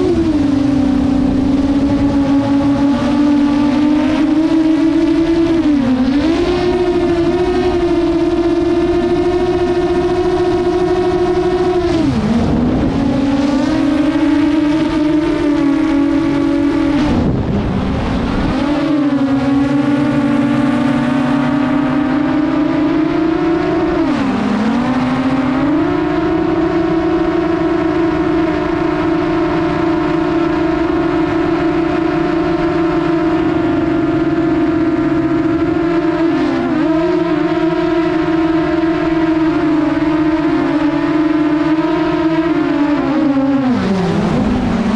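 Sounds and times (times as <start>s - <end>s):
drone propellers whining: 0.0s - 44.9s.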